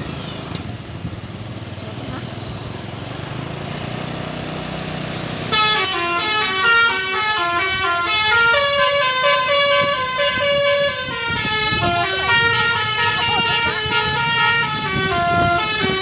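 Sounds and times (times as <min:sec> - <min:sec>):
musical bus horn playing a tune: 0:05.4 - 0:16.0.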